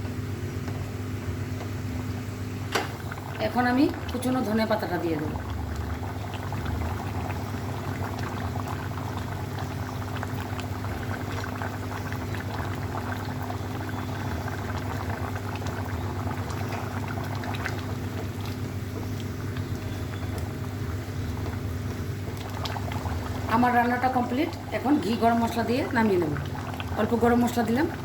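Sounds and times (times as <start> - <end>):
curry simmering with pops: 0.1 - 28.0.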